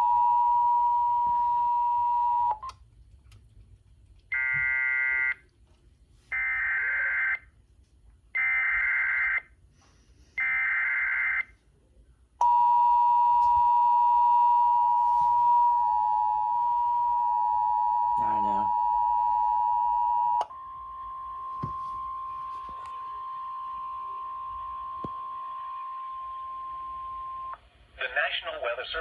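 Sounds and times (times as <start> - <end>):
steady alarm tone: 12.4 - 27.6.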